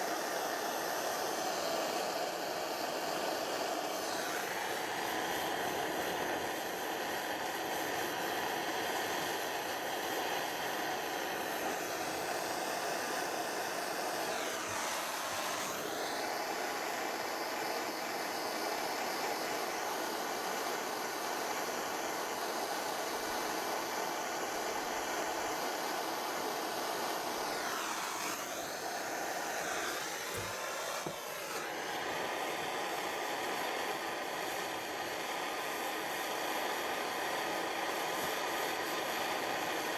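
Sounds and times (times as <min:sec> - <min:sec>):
blow lamp flame hissing: 0:00.0 - 0:39.9.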